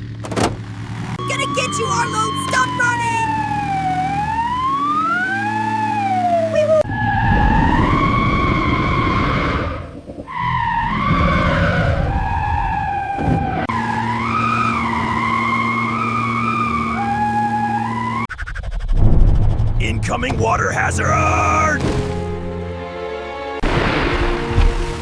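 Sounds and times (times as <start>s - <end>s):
wailing siren-like tone: 1.1s - 18.5s.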